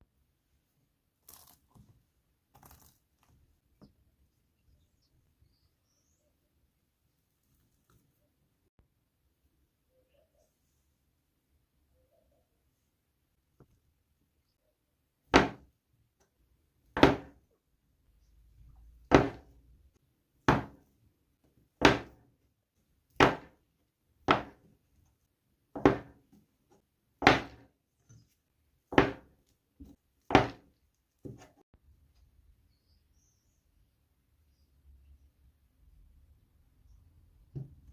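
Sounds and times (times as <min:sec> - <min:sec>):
knife thunks cutting soap on board: 0:17.0 - 0:17.4, 0:19.1 - 0:19.5, 0:20.5 - 0:20.8, 0:21.8 - 0:22.2, 0:23.2 - 0:23.6, 0:24.3 - 0:24.6, 0:25.8 - 0:26.2, 0:27.2 - 0:27.7, 0:28.9 - 0:29.3, 0:30.3 - 0:30.6.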